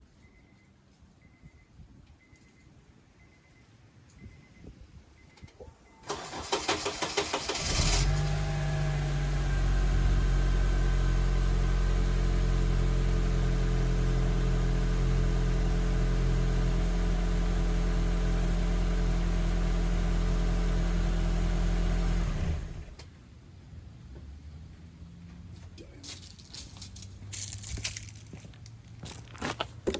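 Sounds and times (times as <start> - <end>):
starter motor cranking: 6.1 - 8.5
car engine idling: 6.1 - 23.0.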